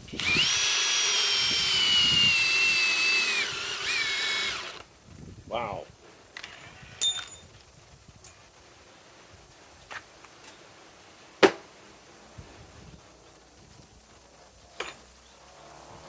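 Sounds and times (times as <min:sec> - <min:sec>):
knocks of hard objects: 0:11.4 - 0:11.8.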